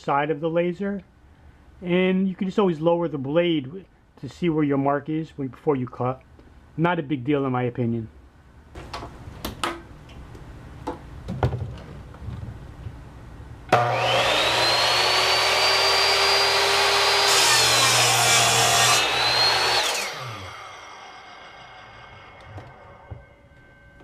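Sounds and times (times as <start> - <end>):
miter saw motor whining: 13.7 - 23.8
saw blade cutting wood: 13.7 - 23.8.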